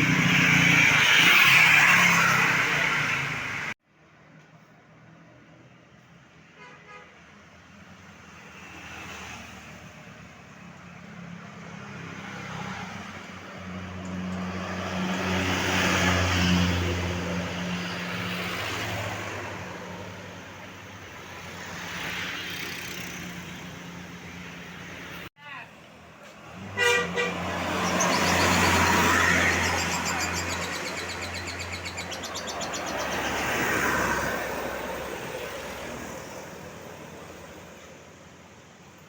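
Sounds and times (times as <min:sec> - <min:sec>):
passing vehicle noise: 0:00.0 - 0:03.8, 0:08.0 - 0:39.0
bus driving past: 0:26.0 - 0:39.0.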